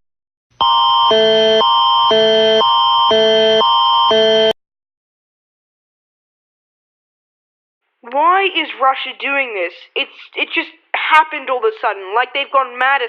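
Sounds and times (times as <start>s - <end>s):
electronic alert tone alternating chords: 0.6s - 4.6s.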